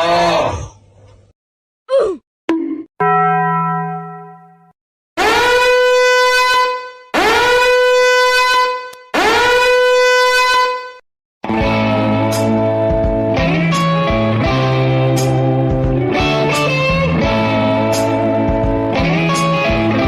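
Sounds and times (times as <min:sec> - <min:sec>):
horn-like note blasts: 0:05.2 - 0:11.0
tone over low hum: 0:11.6 - 0:20.0.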